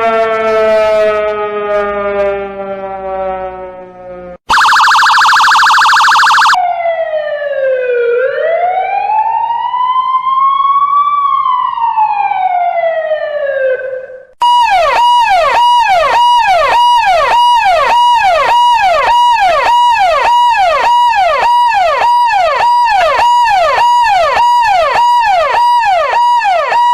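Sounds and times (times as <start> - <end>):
electronic siren wailing and yelping: 4.5 - 6.6, 14.4 - 26.9.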